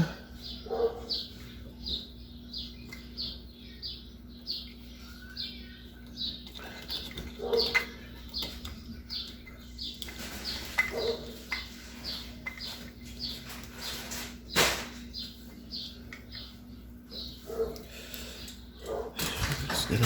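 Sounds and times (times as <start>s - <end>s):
small bird chirping: 0.2s - 19.1s.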